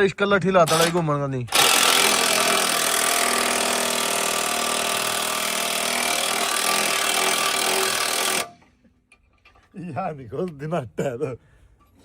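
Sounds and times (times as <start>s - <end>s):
power tool running: 0.7s - 8.6s.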